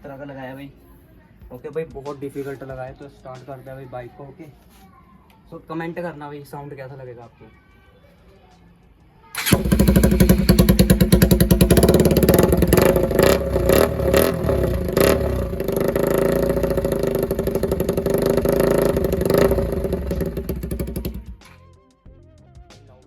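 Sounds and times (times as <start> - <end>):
motorcycle engine revving and idling: 9.4 - 21.4.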